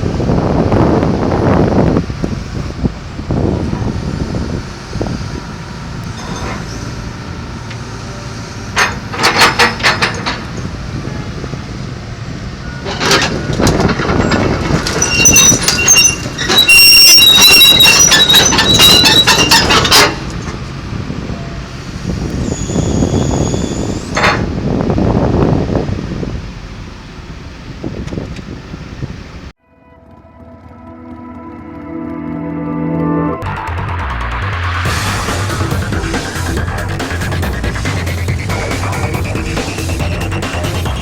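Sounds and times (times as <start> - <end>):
excavator diesel engine running: 0.0 - 41.0
high-pitched metal squealing: 3.3 - 11.5, 12.6 - 20.7, 21.3 - 24.3, 29.9 - 41.0
sharp metallic clanks: 8.6 - 10.9.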